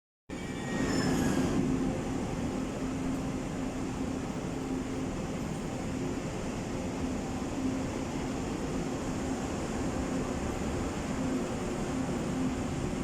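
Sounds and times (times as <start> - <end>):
high-pitched train squeals: 0.3 - 1.7.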